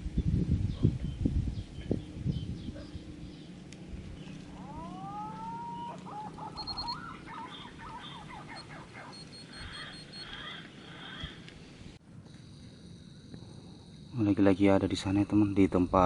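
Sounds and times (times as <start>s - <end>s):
birds warbling: 0.7s - 12.0s
bird whistle: 4.6s - 11.4s
short high bird chirps: 4.7s - 11.1s.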